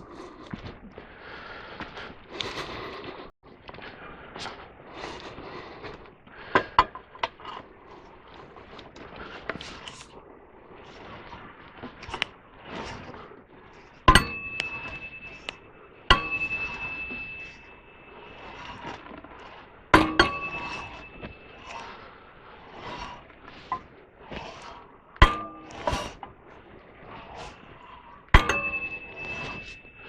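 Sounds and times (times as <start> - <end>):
metallic clangs on steel: 14.1 - 19.2, 19.9 - 21.8, 25.2 - 26.2, 28.3 - 30.0.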